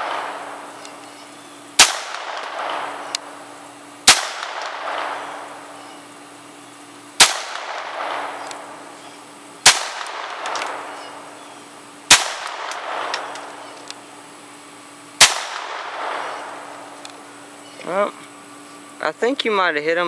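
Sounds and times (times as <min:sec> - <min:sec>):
pistol shots with echo: 0:00.0 - 0:01.0, 0:01.8 - 0:03.4, 0:04.0 - 0:06.0, 0:07.2 - 0:09.0, 0:09.6 - 0:11.4, 0:12.1 - 0:13.8, 0:15.2 - 0:16.8.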